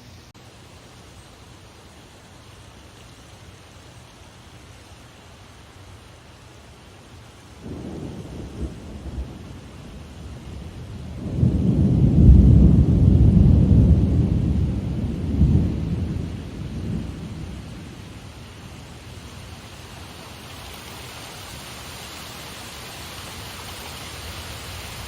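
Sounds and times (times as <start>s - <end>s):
steady rain hiss: 0.0s - 25.0s
thunder rumbling: 7.6s - 18.4s.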